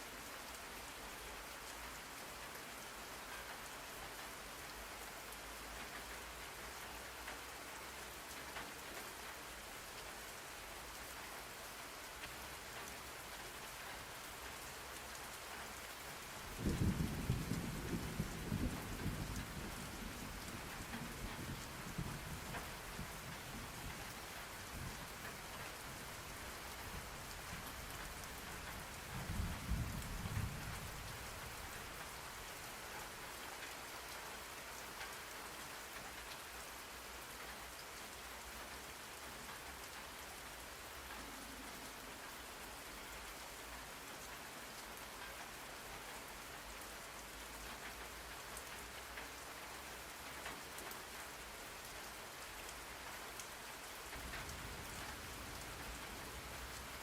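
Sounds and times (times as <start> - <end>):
steady rain: 0.0 - 57.0
low rumble of thunder: 16.5 - 32.0, 54.2 - 57.0.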